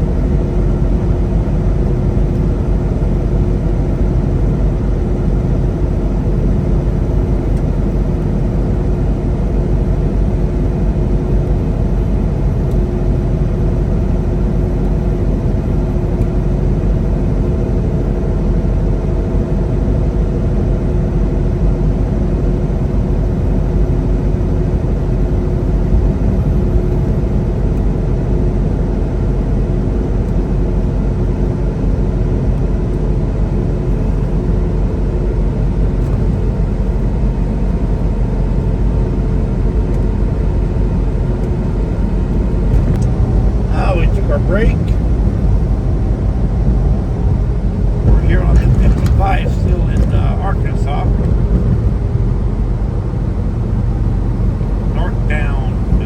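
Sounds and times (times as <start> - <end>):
truck engine drone: 32.2 - 56.0
road noise: 42.4 - 56.0.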